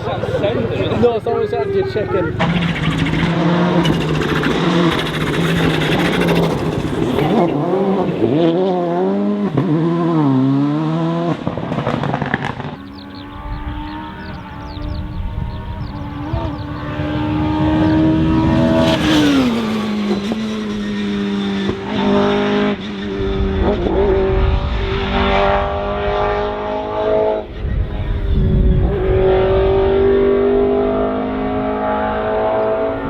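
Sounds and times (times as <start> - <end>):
rally car engine revving: 0.0 - 33.0.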